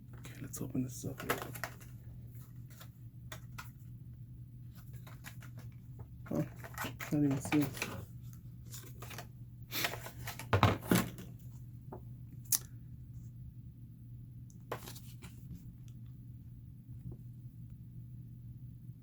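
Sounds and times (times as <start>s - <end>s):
low steady hum: 0.0s - 19.0s
packaging tearing and rustling: 6.3s - 8.0s.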